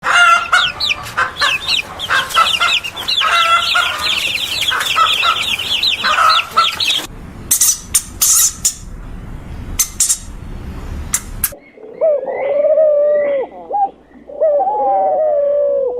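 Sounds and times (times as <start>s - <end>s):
chickens clucking and cheeping: 0.0s - 9.1s, 11.2s - 15.9s
low rumble: 0.6s - 11.6s
sharp clicks: 11.1s - 11.6s.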